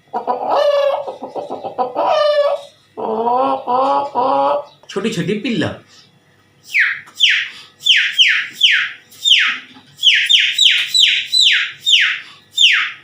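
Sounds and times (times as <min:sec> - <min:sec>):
person imitating chicks peeping: 0:00.2 - 0:04.7.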